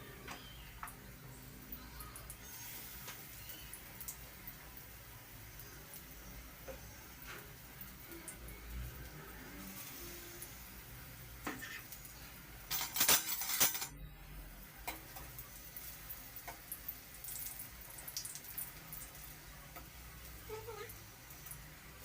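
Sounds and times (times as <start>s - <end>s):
utensils and dishes clinking: 12.6s - 14.0s
loud dish clatter: 12.7s - 13.9s.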